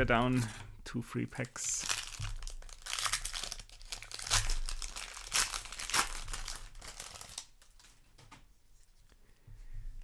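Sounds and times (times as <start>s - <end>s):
foil wrapper crinkling: 1.4s - 8.0s.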